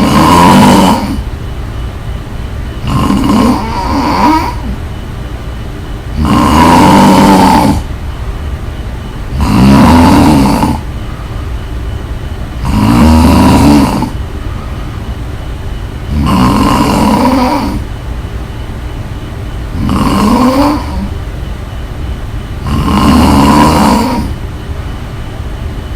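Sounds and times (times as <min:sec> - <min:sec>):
loud snoring: 0:00.0 - 0:01.3, 0:02.8 - 0:04.8, 0:06.1 - 0:07.9, 0:09.3 - 0:10.9, 0:12.6 - 0:14.2, 0:16.1 - 0:17.9, 0:19.7 - 0:21.1, 0:22.6 - 0:24.4.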